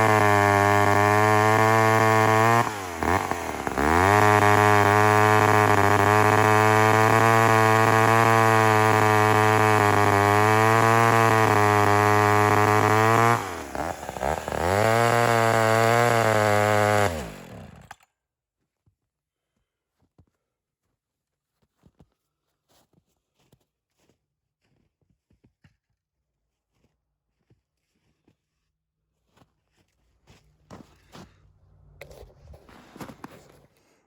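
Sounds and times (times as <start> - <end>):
chainsaw running at high revs: 0.0 - 18.0.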